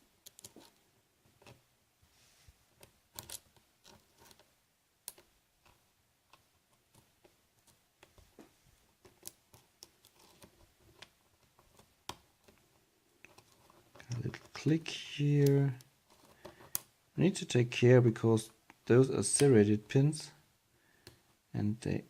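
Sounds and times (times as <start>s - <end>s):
lock pick clicking and scraping: 0.2s - 0.8s, 2.8s - 8.1s, 15.4s - 16.9s.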